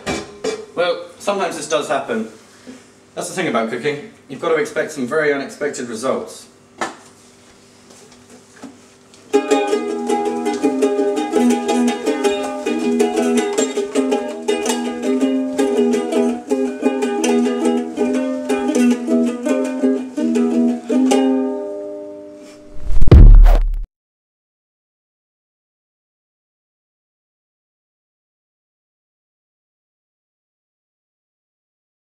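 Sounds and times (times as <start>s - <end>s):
ukulele playing plucked tune: 9.3s - 22.1s
loud low thud: 22.7s - 23.8s.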